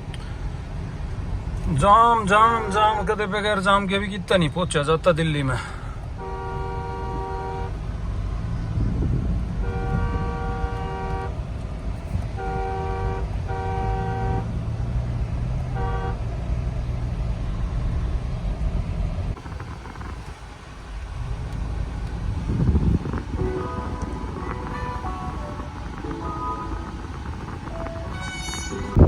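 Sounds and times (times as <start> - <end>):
engine and road rumble: 0.0 - 29.0
car horn honking: 6.2 - 7.8, 9.6 - 11.4, 12.3 - 14.6, 15.7 - 16.3, 23.0 - 29.0.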